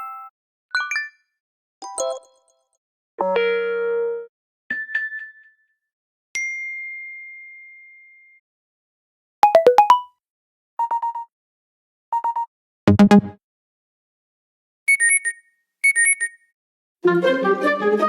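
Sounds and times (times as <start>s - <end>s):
phone alert tones: 9.4s - 10.1s, 14.9s - 16.4s.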